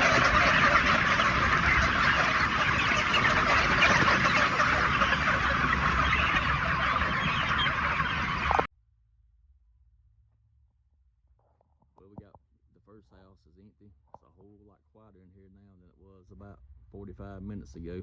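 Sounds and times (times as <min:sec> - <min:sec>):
chickens clucking and squawking: 0:00.0 - 0:08.7.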